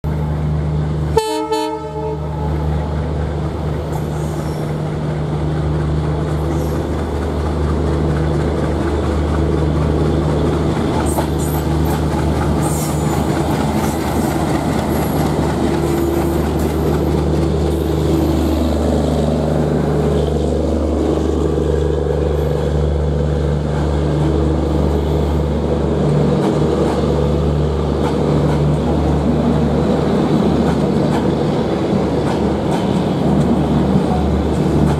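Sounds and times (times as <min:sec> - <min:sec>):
train moving on rails: 0:00.0 - 0:34.9
locomotive horn: 0:01.1 - 0:02.7
diesel engine low drone: 0:01.9 - 0:34.9.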